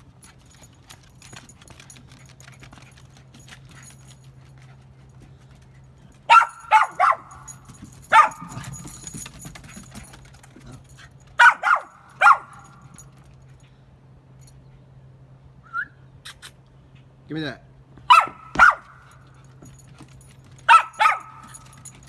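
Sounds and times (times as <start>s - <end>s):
dog barking: 6.3s - 8.9s, 11.4s - 12.9s, 18.1s - 19.1s, 20.7s - 21.7s.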